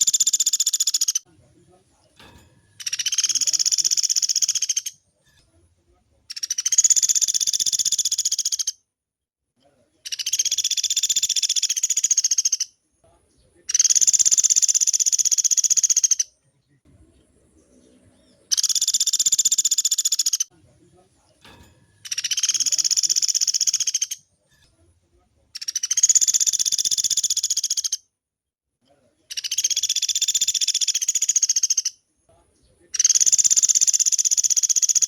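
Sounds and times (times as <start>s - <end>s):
woodpecker rattling trills: 0.0s - 1.2s, 2.6s - 5.0s, 6.3s - 8.8s, 10.1s - 12.7s, 13.7s - 16.3s, 17.3s - 20.5s, 22.0s - 24.3s, 25.6s - 28.0s, 29.3s - 32.0s, 33.0s - 35.0s.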